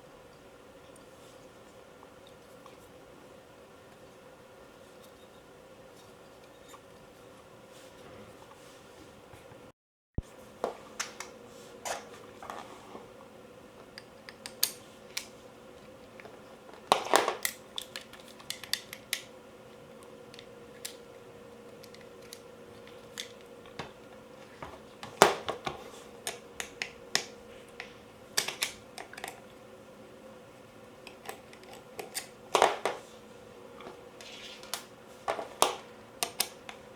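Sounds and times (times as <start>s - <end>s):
faint steady hum: 0.0s - 36.9s
clicks and taps of gun parts: 17.0s - 19.3s.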